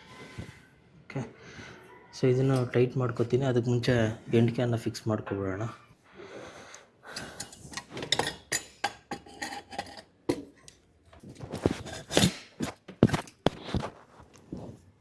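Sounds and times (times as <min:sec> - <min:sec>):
metal clinks and scraping: 0:07.1 - 0:10.4.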